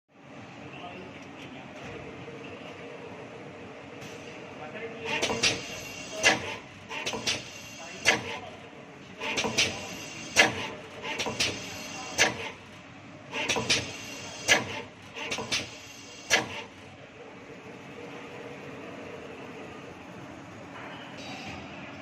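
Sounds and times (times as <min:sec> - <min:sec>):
welding machine clicks and clack: 0:05.1 - 0:08.4, 0:09.2 - 0:12.6, 0:13.3 - 0:16.9.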